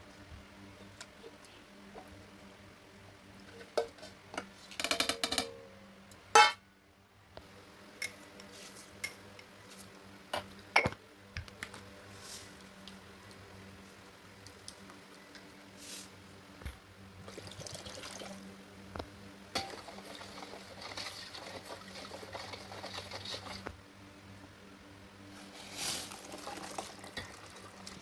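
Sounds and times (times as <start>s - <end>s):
faint steady hum: 0.0s - 28.0s.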